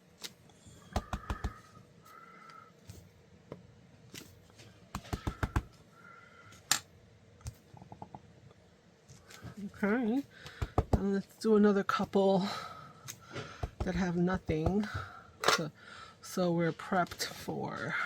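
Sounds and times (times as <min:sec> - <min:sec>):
rubber stamp tapping: 0:00.9 - 0:01.7, 0:05.0 - 0:05.8, 0:10.4 - 0:11.1, 0:13.6 - 0:15.0.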